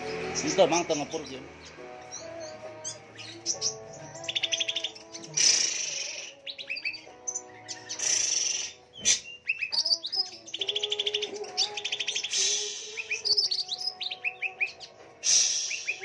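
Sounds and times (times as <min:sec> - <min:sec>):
birds singing trills: 0:00.0 - 0:16.0
harsh scratchy bird chatter: 0:00.0 - 0:16.0.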